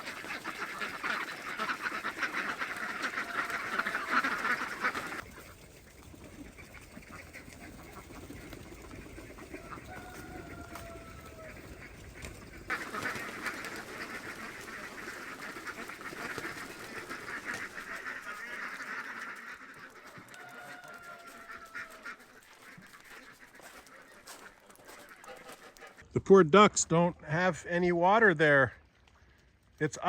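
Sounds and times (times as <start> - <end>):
falling honk-like call: 0.0 - 5.2, 9.3 - 25.0
ducks calling: 0.0 - 30.0.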